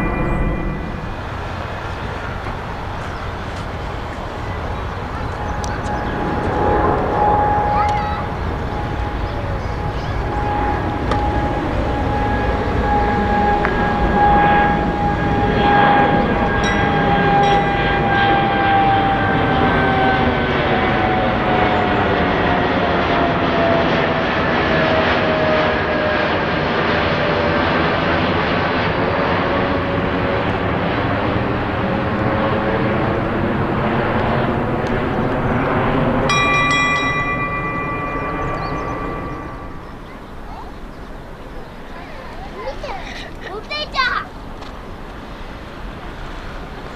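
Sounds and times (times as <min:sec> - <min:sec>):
high steady whine: 0:00.0 - 0:21.8, 0:31.5 - 0:42.6
jet airliner passing by: 0:00.0 - 0:46.9.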